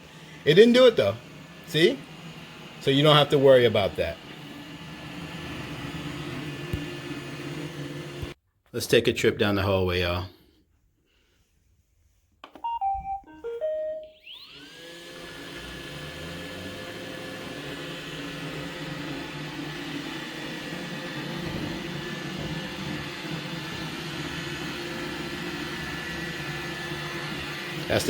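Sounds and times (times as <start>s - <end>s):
vacuum motor whining: 0.0s - 8.4s, 13.6s - 28.0s
robot vacuum beeping melody: 12.6s - 14.8s.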